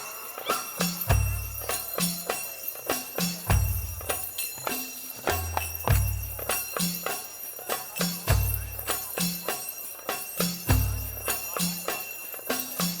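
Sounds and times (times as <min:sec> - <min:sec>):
jingling bell-like percussion: 0:00.0 - 0:13.0
sharp percussion hits: 0:00.0 - 0:13.0.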